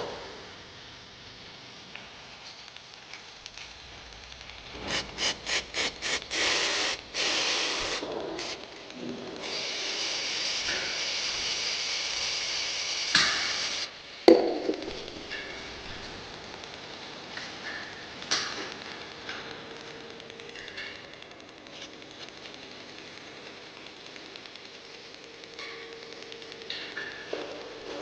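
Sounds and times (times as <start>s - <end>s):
sharp ringing knock: 14.3s - 15.2s.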